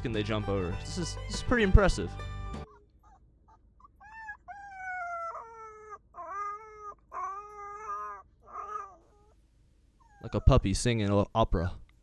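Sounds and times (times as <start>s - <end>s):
puppy howling: 2.6s - 9.4s, 10.0s - 10.6s.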